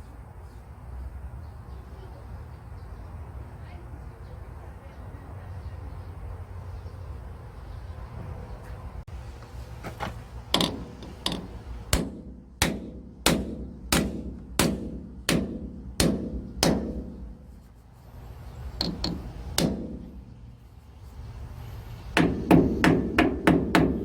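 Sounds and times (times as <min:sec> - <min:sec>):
hand hammer striking: 0:10.6 - 0:17.2, 0:18.8 - 0:20.1, 0:22.2 - 0:24.0.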